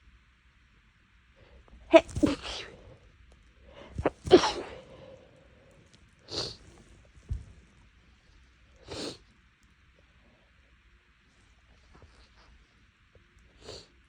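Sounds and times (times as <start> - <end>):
woman sneezing: 1.9 - 2.8, 4.0 - 4.8.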